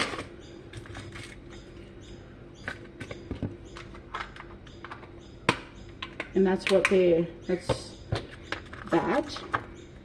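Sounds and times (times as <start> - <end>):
faint steady hum: 0.0 - 10.0
snack containers clicking and tapping: 2.6 - 9.8.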